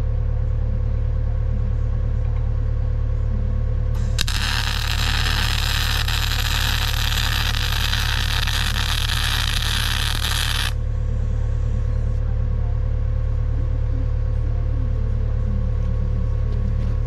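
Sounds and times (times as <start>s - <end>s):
constant low hum: 0.0s - 17.0s
metalworking tool hissing: 4.0s - 10.8s.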